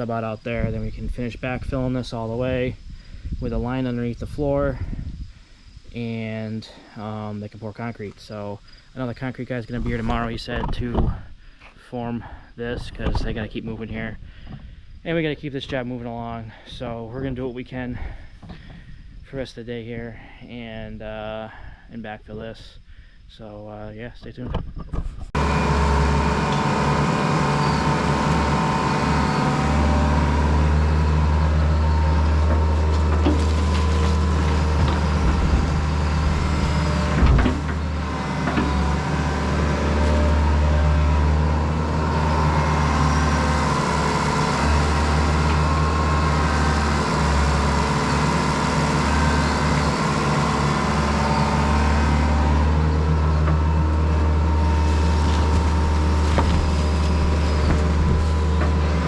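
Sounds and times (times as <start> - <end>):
heavy diesel engine under load: 25.2 - 59.0.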